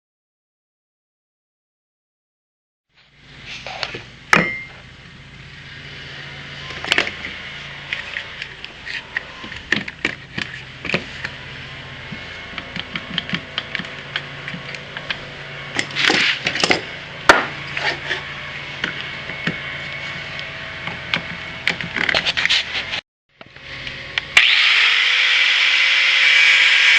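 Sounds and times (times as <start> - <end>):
low hum: 3.0 - 26.7
tools knocking and clanking: 3.9 - 4.8, 9.4 - 11.3.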